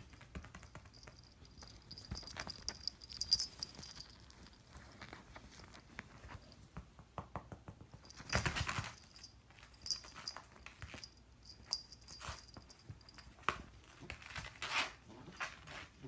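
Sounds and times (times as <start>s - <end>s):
kitten scrabbling and pouncing: 0.0s - 11.2s.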